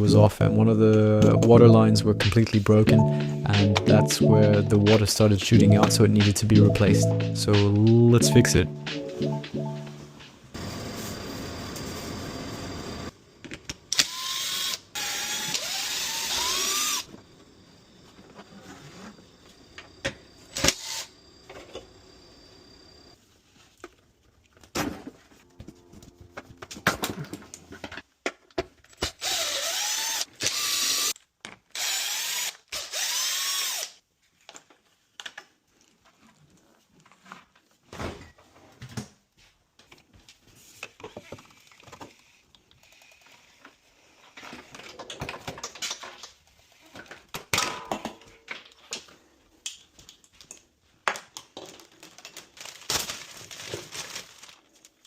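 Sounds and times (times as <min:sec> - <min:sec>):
power drill running: 0:13.9 - 0:17.1, 0:20.7 - 0:21.1, 0:29.2 - 0:31.1, 0:31.8 - 0:33.9.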